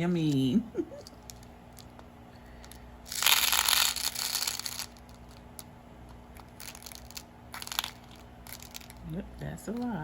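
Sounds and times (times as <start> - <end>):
plastic packet crinkling: 2.6 - 5.7, 6.4 - 9.2.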